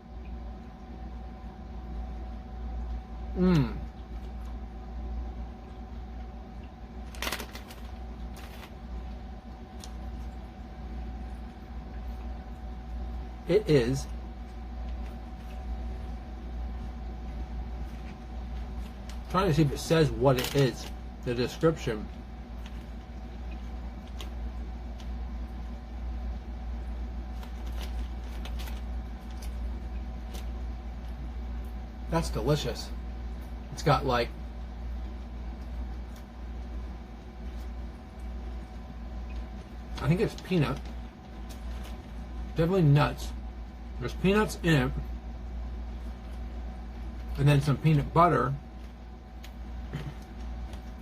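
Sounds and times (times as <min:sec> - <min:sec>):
low steady hum: 0:00.0 - 0:51.0
wrapper rustling and crinkling: 0:07.0 - 0:09.1, 0:17.8 - 0:21.0, 0:27.2 - 0:30.6, 0:39.4 - 0:42.4
candy bar crunching: 0:07.0 - 0:10.6, 0:17.4 - 0:32.3, 0:37.4 - 0:42.9.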